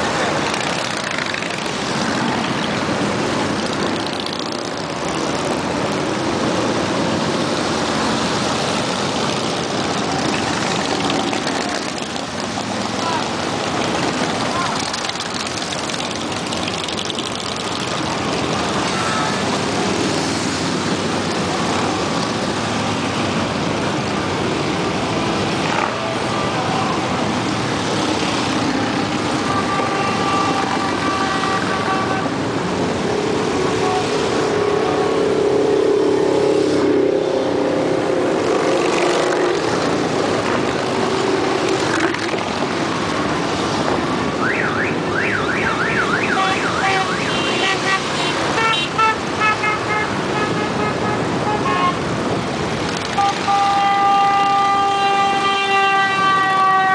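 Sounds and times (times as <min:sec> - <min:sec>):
motorcycles rumbling past: 0:00.0 - 0:06.8, 0:07.5 - 0:22.5, 0:34.3 - 0:43.8
horn toots: 0:46.2 - 0:52.1, 0:53.1 - 0:56.9.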